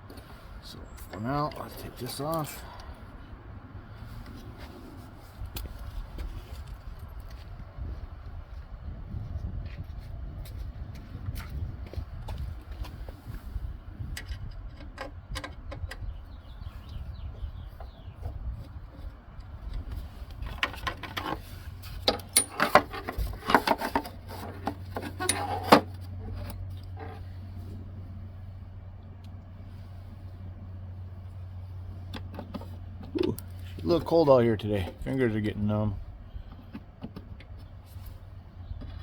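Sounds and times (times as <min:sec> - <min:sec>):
low steady rumble: 0:00.0 - 0:39.0
metal tools clinking: 0:22.1 - 0:24.0, 0:25.0 - 0:25.8.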